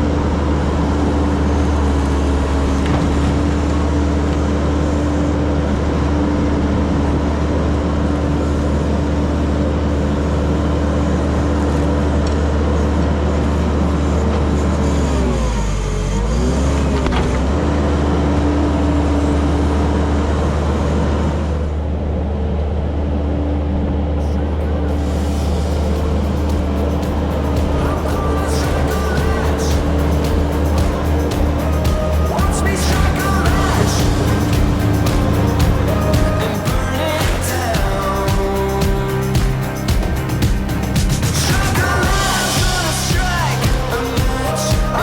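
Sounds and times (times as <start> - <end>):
tractor engine running under load: 24.2 - 45.0.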